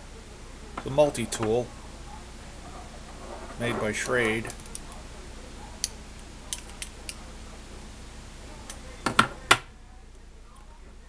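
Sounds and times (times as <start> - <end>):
metal tool clicks: 5.8 - 7.2.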